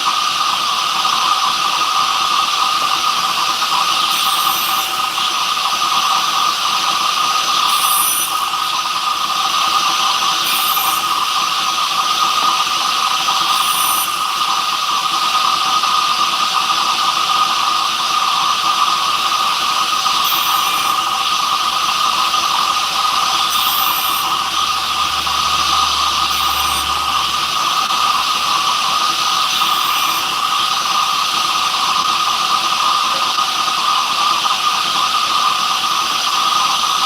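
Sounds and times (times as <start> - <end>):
woodworking power tool running: 0.0 - 37.0.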